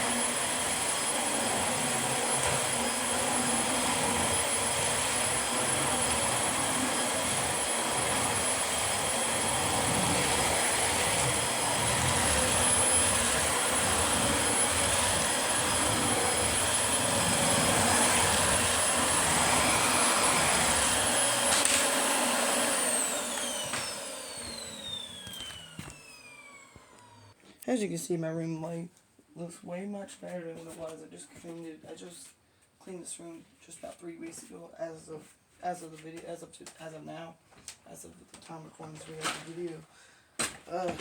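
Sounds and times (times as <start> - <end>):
vacuum cleaner running: 0.0 - 27.4
vacuum motor winding down: 0.0 - 27.4.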